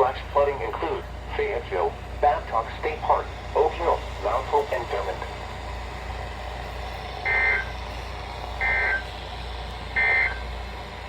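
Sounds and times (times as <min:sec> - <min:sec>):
low hum and hiss: 0:00.0 - 0:11.0
digital data tone screech: 0:10.0 - 0:10.4.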